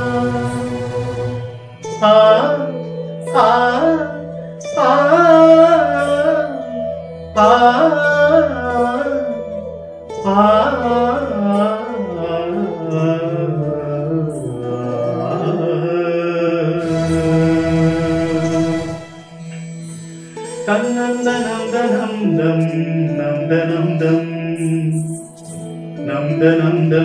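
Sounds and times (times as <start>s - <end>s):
steady drone: 0.0s - 4.6s, 16.8s - 22.2s
wordless vocal melody: 0.0s - 27.0s
bright shimmering sound: 16.8s - 22.5s.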